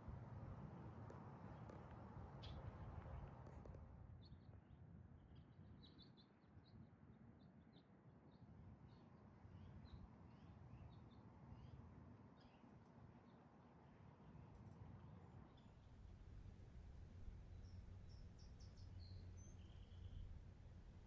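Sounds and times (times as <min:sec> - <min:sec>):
low steady rumble: 0:16.0 - 0:21.0
faint bird chirps: 0:17.5 - 0:20.4.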